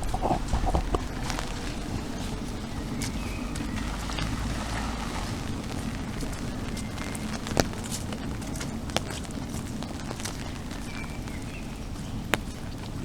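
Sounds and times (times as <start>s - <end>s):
low rumble: 0.0s - 8.5s
steady rain falling: 0.0s - 13.0s.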